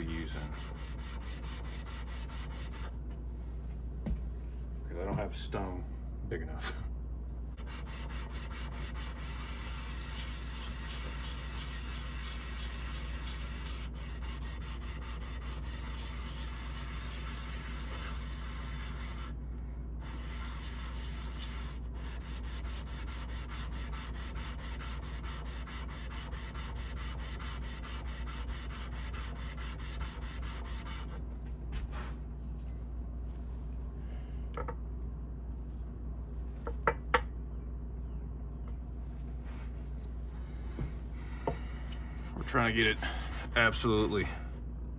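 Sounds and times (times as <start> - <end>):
blade scraping on sandpaper: 0.0 - 2.9, 7.6 - 19.4, 20.0 - 31.2
low steady hum: 0.0 - 44.9.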